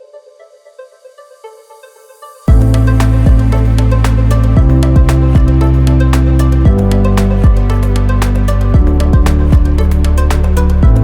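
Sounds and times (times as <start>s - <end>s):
electronic music: 0.0s - 11.0s
sharp percussion hits: 2.5s - 9.8s
heavy sustained bass: 2.5s - 11.0s.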